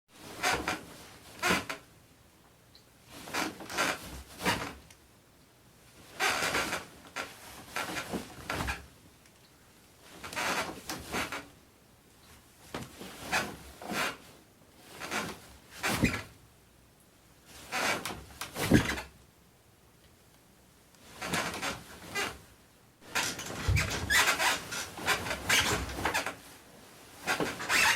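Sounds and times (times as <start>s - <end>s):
bed creaking: 0.2s - 1.9s, 3.2s - 4.8s, 6.0s - 8.9s, 10.0s - 11.5s, 12.7s - 16.3s, 17.5s - 19.1s, 21.0s - 27.9s.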